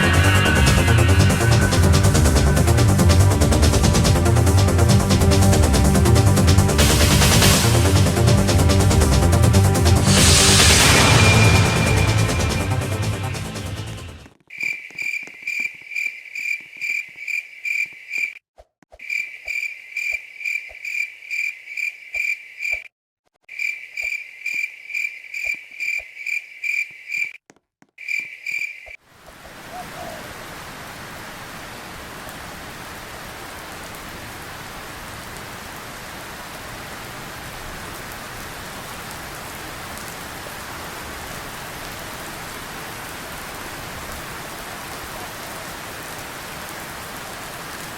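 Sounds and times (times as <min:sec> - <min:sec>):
steady rain: 0:00.0 - 0:14.3, 0:29.1 - 0:47.9.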